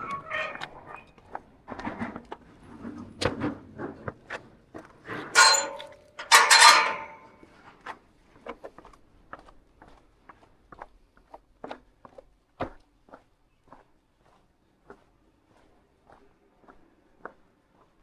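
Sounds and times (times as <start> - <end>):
door creaking open: 0.0 - 1.1.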